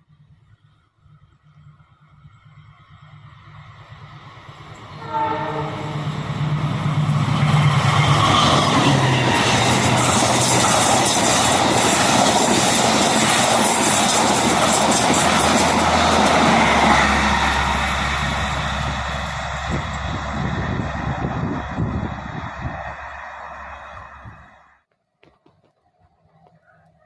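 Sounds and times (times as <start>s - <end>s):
train passing: 0.0s - 24.9s
train horn blast: 4.9s - 6.5s
wheels clattering on rails: 6.7s - 22.0s.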